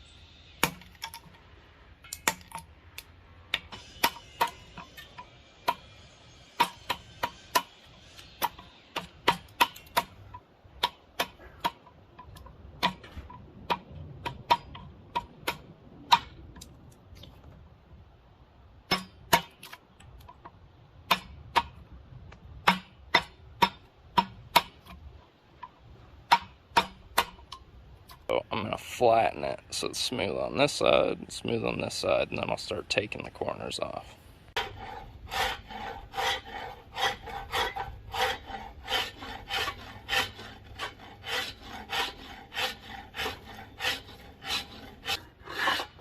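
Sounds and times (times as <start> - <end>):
chisel struck chopping wood: 0.6 - 1.1, 2.1 - 2.6, 8.4 - 10.2, 12.8 - 16.3, 21.1 - 21.8, 22.6 - 24.9, 26.3 - 27.4.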